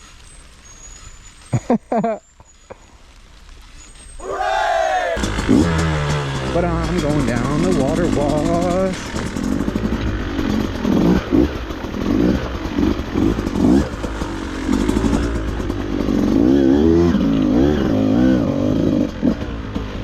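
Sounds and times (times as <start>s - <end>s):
two-stroke engine revving: 5.2s - 20.0s.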